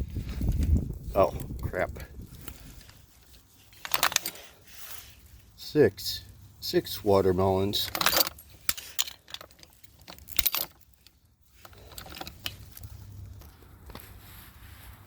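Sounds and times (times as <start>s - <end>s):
light metal jingling: 2.5s - 5.6s, 7.6s - 13.4s.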